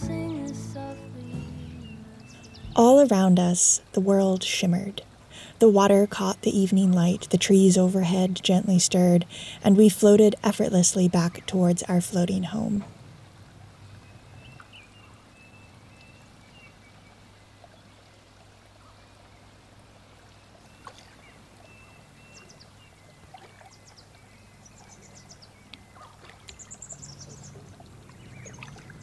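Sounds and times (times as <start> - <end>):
low steady hum: 0.0 - 14.4
water trickling and dripping: 0.0 - 29.0
small drips and splashes: 20.2 - 21.7, 22.5 - 25.0, 25.6 - 29.0.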